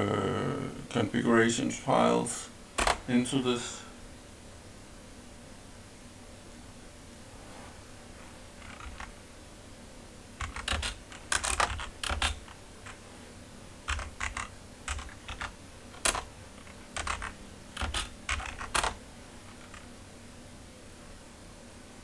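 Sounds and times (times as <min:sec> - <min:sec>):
keyboard key clicks: 0:02.8 - 0:03.1, 0:10.4 - 0:13.0, 0:13.9 - 0:19.9.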